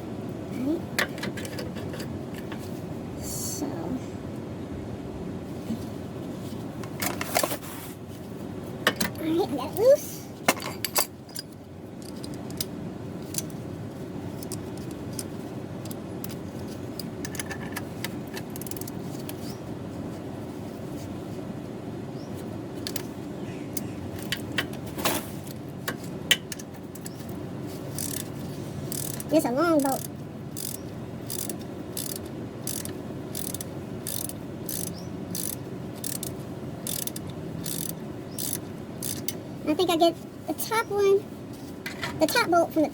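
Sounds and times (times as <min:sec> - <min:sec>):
low background rumble: 0:00.0 - 0:07.1
wrench clicking on bolt: 0:17.3 - 0:19.0, 0:28.0 - 0:28.3, 0:28.9 - 0:39.4.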